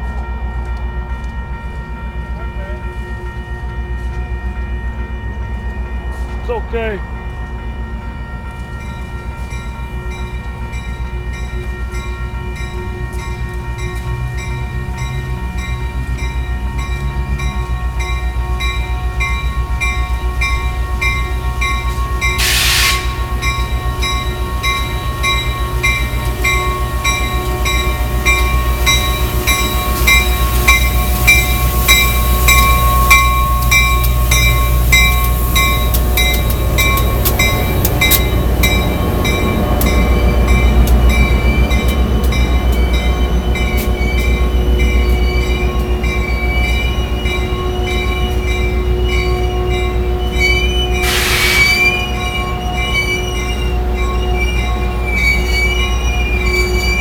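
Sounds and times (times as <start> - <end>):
grinding stones whining on rail: 8.4 - 57.0
short hiss: 51.0 - 52.0.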